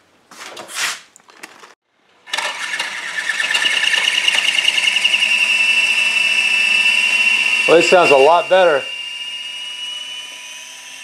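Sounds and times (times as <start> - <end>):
rc helicopter rotor whine: 2.3 - 11.0.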